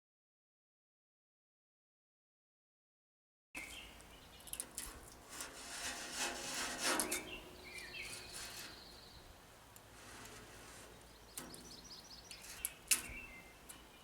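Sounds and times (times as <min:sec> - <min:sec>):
birds chirping: 0:03.6 - 0:04.6, 0:07.0 - 0:09.5, 0:10.6 - 0:14.0
rustling: 0:03.6 - 0:13.9.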